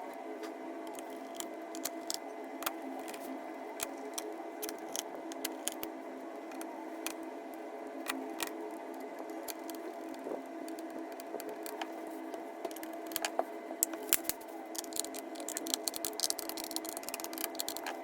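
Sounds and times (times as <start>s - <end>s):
steady low hum: 0.0s - 18.0s
small parts and tools clicking: 0.8s - 3.2s, 3.8s - 5.9s, 8.0s - 11.9s, 12.7s - 18.0s.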